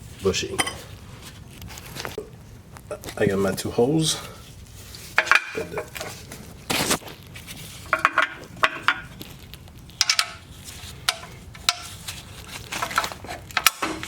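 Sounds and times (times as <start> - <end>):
metal hardware clinking: 10.0 - 10.4.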